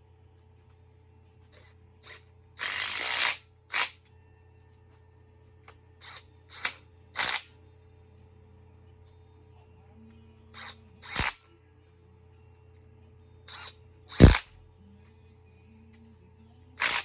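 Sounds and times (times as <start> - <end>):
hand ratchet clicking: 1.6 - 4.0, 6.0 - 7.5, 10.6 - 11.4, 13.5 - 14.5, 16.8 - 17.0.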